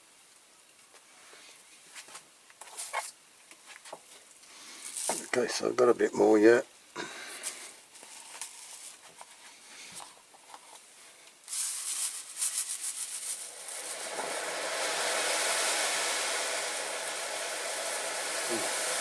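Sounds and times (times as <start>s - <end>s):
chemical fizzing and hissing: 11.4s - 19.0s.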